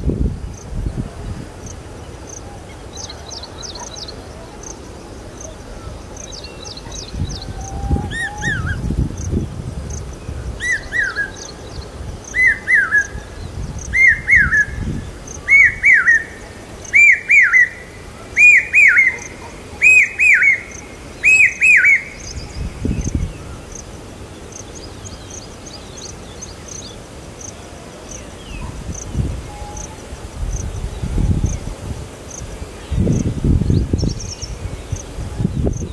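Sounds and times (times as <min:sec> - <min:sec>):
hawk-cuckoo whistled call: 0:14.0 - 0:14.8, 0:15.5 - 0:17.8, 0:18.4 - 0:22.2.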